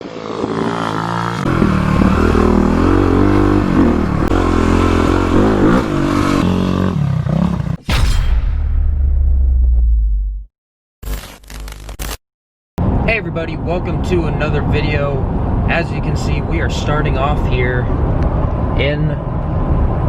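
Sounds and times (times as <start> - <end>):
dirt bike engine revving: 0.0 - 7.8.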